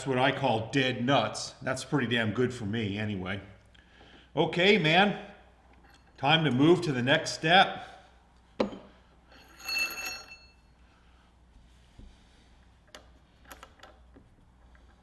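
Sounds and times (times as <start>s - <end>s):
bright metallic ring: 8.6s - 10.8s.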